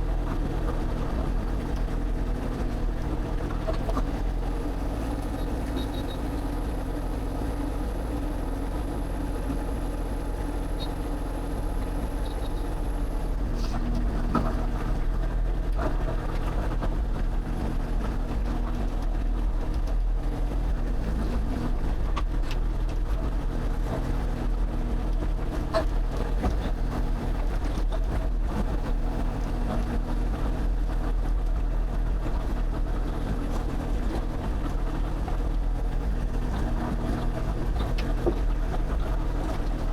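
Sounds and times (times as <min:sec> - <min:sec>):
excavator diesel engine running: 0:00.0 - 0:39.9.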